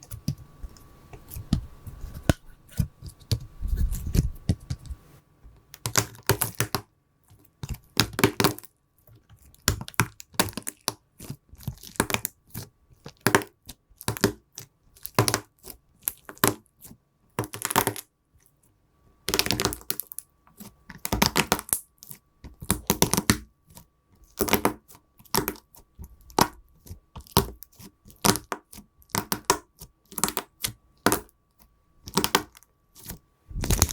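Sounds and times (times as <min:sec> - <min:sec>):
faint high hum: 0:00.0 - 0:05.7
slime crackling and popping: 0:27.2 - 0:31.3, 0:32.0 - 0:33.9.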